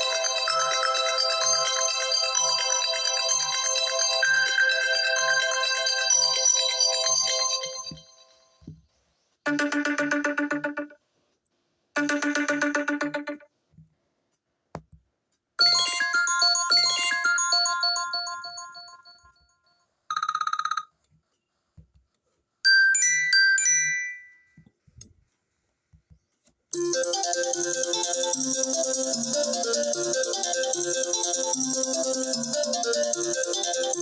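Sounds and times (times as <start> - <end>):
chiming bell-like melody: 0.0 - 8.6, 15.6 - 20.8, 22.7 - 24.6.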